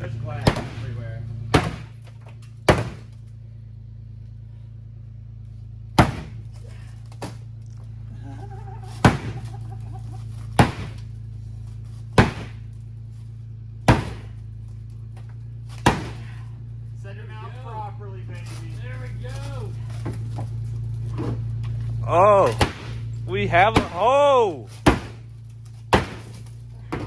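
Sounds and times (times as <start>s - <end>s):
steady low hum: 0.0s - 27.0s
sledgehammer striking sheet metal: 0.4s - 2.0s, 2.7s - 3.2s, 6.0s - 6.5s, 9.0s - 9.5s, 10.6s - 11.0s, 12.2s - 12.7s, 13.9s - 14.4s, 15.8s - 16.4s, 22.5s - 23.1s, 24.8s - 25.3s, 25.9s - 27.0s.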